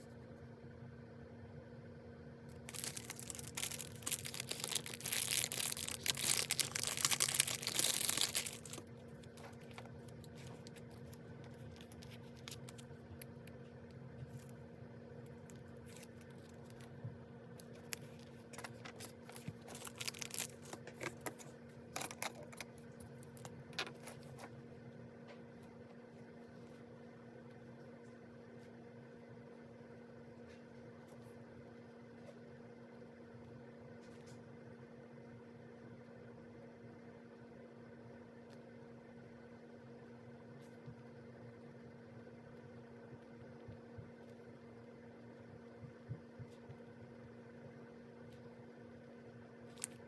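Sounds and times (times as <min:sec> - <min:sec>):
paper rustling and tearing: 0:02.6 - 0:12.9, 0:17.8 - 0:22.7.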